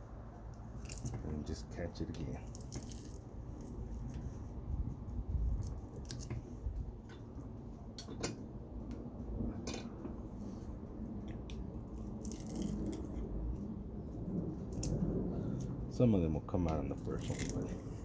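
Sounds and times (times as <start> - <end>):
pliers snipping wire: 5.6 - 6.4, 16.7 - 17.8.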